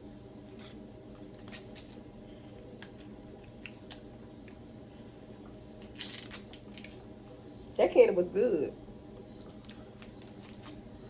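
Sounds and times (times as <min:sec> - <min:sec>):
plastic candy wrapper crinkling: 0:05.9 - 0:07.0.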